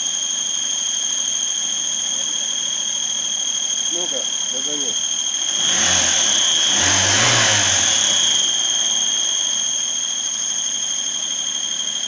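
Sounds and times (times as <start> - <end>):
high-pitched engine whistle: 1.4 - 12.0
car engine running: 3.9 - 10.0.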